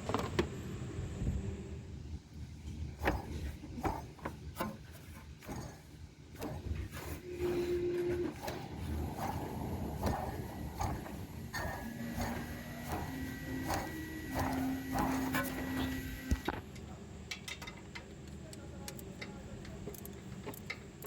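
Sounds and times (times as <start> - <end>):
steady held tones: 6.9 - 16.5.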